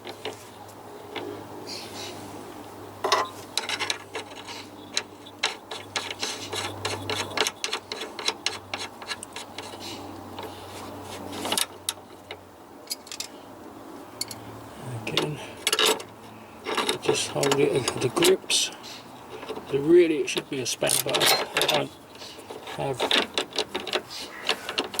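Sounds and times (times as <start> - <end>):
metal tools clacking: 3.0 - 9.8, 11.4 - 13.4, 14.2 - 14.4, 15.1 - 18.7, 19.3 - 25.0.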